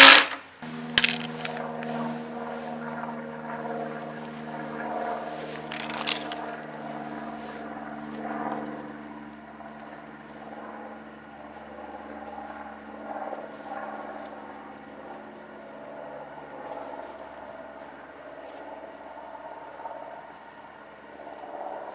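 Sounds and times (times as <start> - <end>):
lawnmower engine running: 0.0 - 4.6, 5.2 - 7.4.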